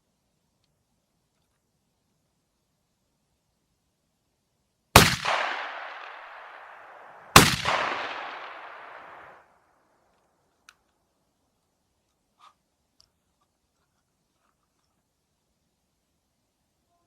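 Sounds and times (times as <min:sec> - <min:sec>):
gunshot echo: 0:05.0 - 0:09.4
shotgun shots: 0:05.0 - 0:09.4.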